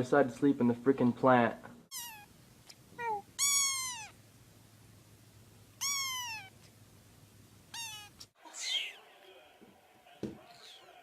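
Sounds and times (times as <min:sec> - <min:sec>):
cat meowing: 0:01.9 - 0:02.3, 0:03.0 - 0:04.2, 0:05.8 - 0:06.7, 0:07.7 - 0:09.0.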